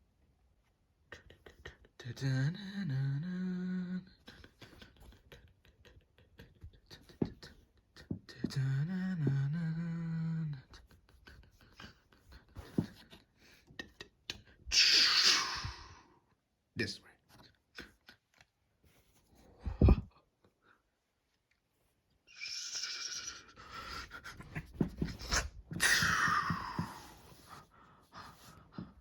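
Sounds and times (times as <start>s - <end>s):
person humming a tune: 1.1s - 4.4s, 8.4s - 10.8s.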